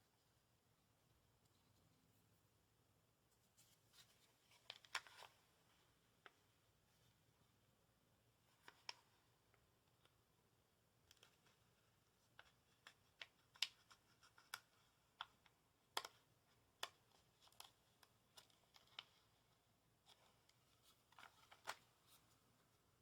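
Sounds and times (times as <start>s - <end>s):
playing cards being handled: 20.1s - 22.5s.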